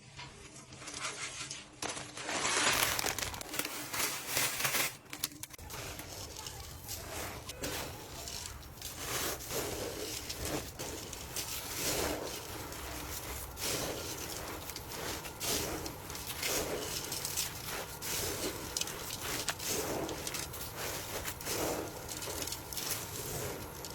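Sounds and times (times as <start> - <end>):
wet chewing: 5.6 - 23.9.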